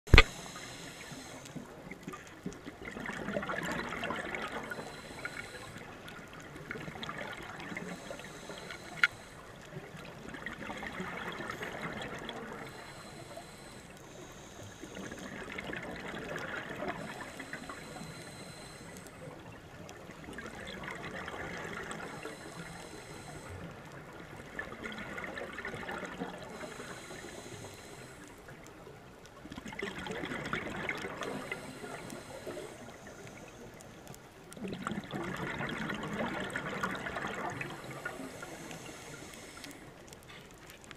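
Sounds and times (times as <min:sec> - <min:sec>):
sharp click: 0:00.1 - 0:00.4.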